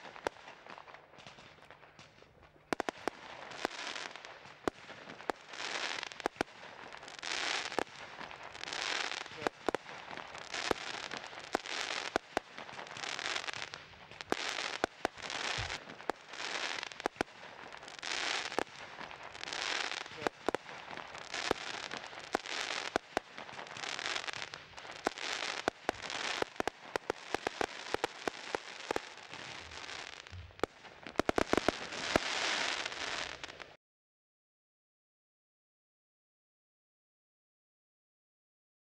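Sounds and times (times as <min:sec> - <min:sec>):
firework shots cracking and hissing: 0:00.0 - 0:33.8
sharp firework bangs: 0:12.8 - 0:17.2.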